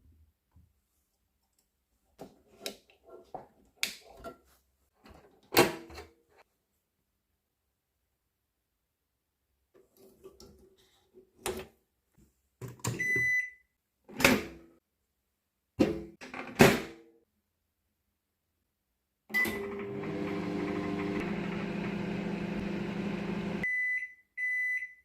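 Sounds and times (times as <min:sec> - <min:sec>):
microwave keypad beep: 0:13.0 - 0:13.7, 0:19.4 - 0:19.8, 0:23.6 - 0:25.0
microwave humming: 0:19.3 - 0:23.6.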